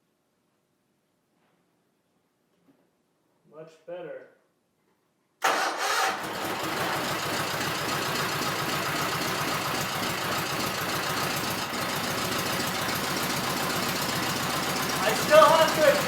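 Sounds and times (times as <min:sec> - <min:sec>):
garden tractor engine running: 0:05.5 - 0:16.0.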